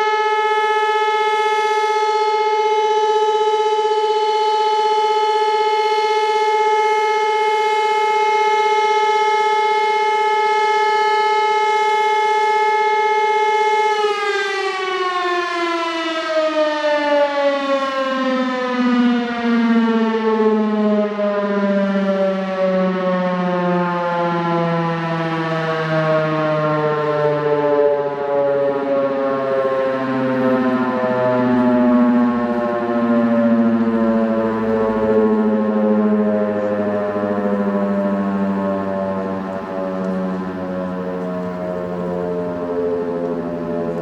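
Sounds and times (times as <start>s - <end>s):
electromechanical siren winding down: 0.0s - 44.0s.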